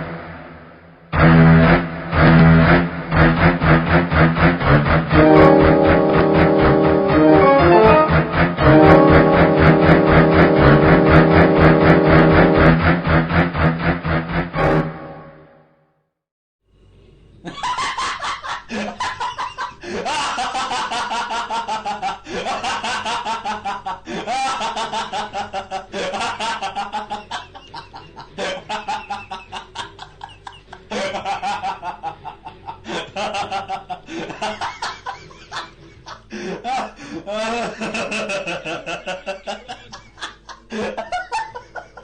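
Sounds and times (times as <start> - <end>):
person laughing hard: 17.5 - 42.0.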